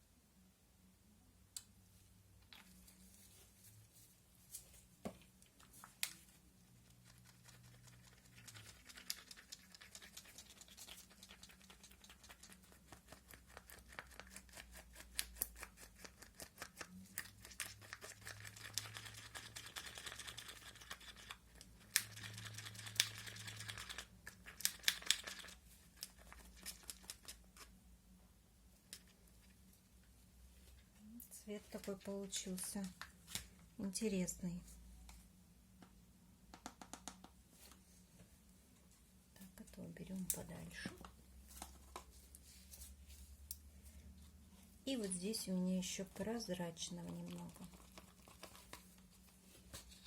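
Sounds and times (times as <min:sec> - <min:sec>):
stick stirring resin in plastic cup: 0:40.2 - 0:50.0.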